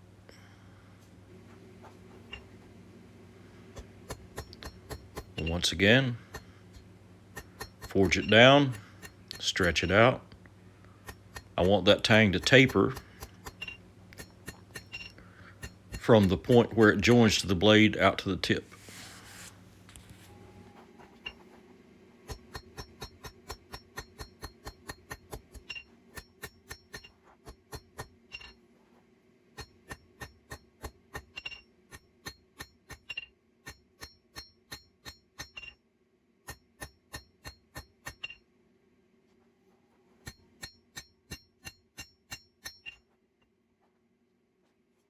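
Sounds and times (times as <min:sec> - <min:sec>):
steady low hum: 0:00.0 - 0:35.7
hammer striking steel on anvil: 0:03.8 - 0:06.5, 0:07.3 - 0:10.1, 0:11.0 - 0:17.5, 0:22.3 - 0:28.6, 0:29.6 - 0:35.8, 0:36.5 - 0:38.4, 0:40.2 - 0:43.0.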